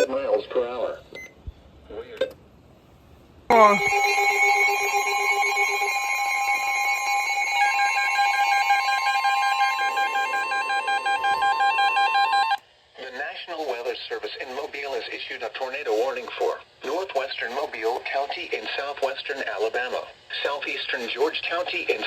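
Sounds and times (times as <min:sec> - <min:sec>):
emergency alert attention tone: 0:03.5 - 0:12.6.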